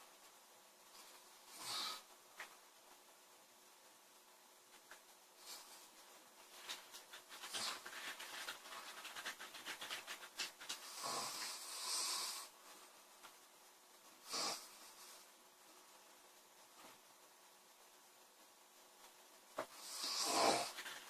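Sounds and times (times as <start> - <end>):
girl snoring: 1.5 - 2.1, 10.9 - 12.6, 14.2 - 14.8, 19.8 - 20.8.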